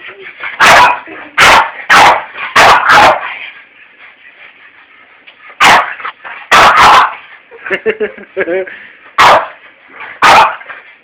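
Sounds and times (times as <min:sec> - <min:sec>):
dog barking: 0:00.6 - 0:03.4, 0:05.6 - 0:07.2, 0:09.2 - 0:09.6, 0:10.2 - 0:10.7.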